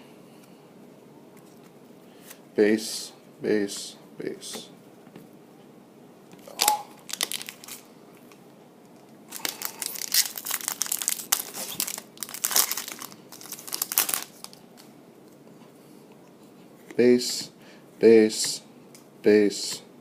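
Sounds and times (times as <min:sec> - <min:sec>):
wrapper crinkling: 0:06.4 - 0:07.9, 0:09.3 - 0:14.9.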